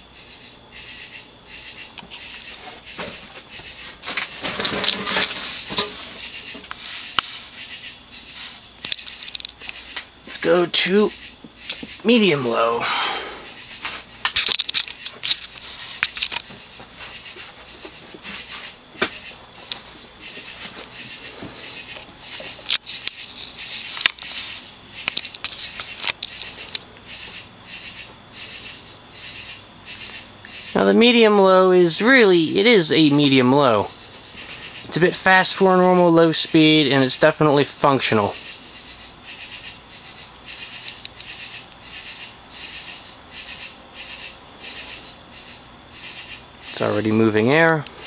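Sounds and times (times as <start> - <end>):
ceiling fan air hiss: 0.0 - 48.0
sharp clicks: 8.8 - 10.1, 25.0 - 27.1.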